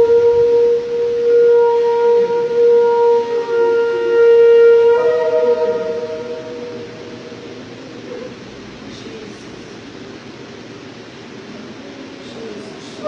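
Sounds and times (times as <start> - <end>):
higher tone: 0.0 - 8.8
steady horn-like tone: 0.0 - 8.8.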